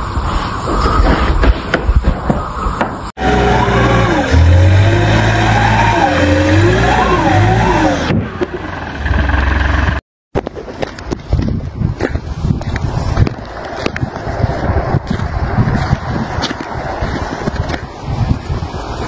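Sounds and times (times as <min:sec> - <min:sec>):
car engine revving: 0:03.2 - 0:10.0
tires squealing: 0:03.2 - 0:10.0.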